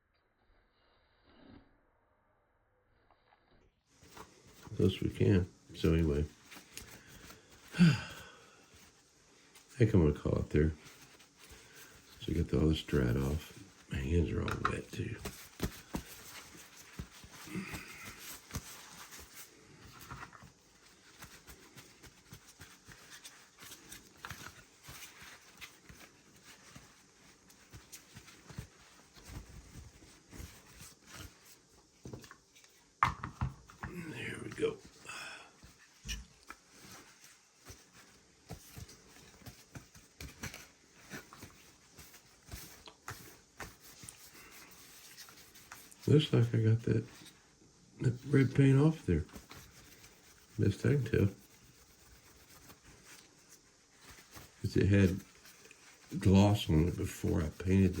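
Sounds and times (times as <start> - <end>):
faint rustling and rubbing: 3.2 - 58.0.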